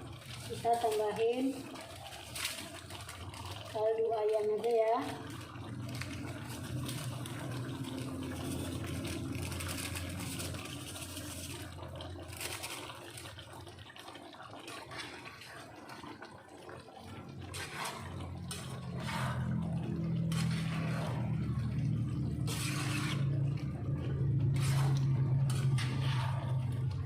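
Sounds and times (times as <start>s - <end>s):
sauce bubbling in a pan: 0.0s - 27.0s
low hum: 17.2s - 27.0s.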